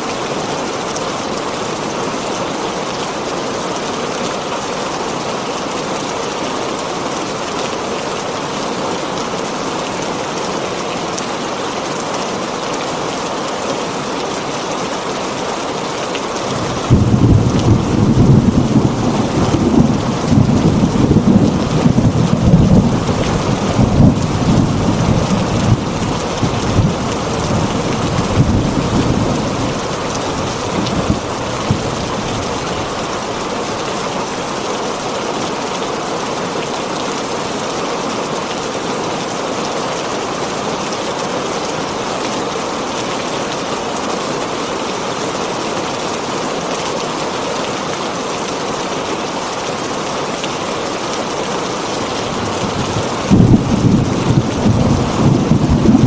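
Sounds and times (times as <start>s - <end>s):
heavy rain on a tin roof: 0.0s - 56.0s
thunder rumbling: 16.5s - 33.3s, 52.0s - 56.0s.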